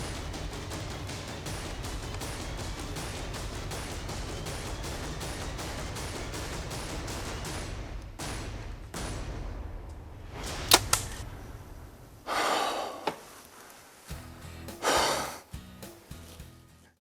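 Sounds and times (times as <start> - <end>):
sharp crack: 0.0 - 12.4
bowstring snap: 10.6 - 11.3.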